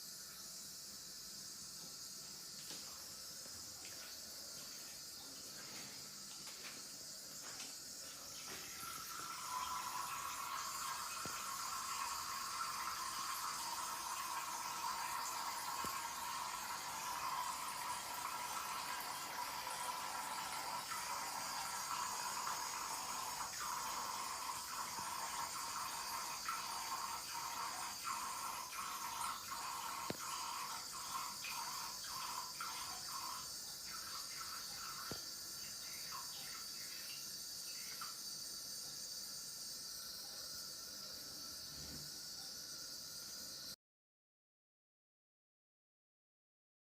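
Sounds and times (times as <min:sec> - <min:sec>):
running water hissing: 0:00.0 - 0:43.8.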